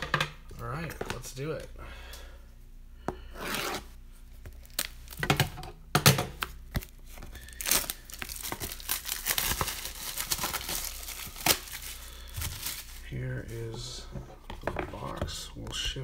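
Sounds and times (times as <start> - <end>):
plastic wrapping tearing and crinkling: 4.4 - 5.3, 6.4 - 13.2.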